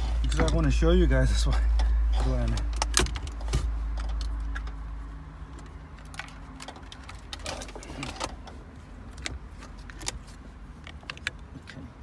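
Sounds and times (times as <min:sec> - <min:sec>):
low rumble: 0:00.0 - 0:06.2.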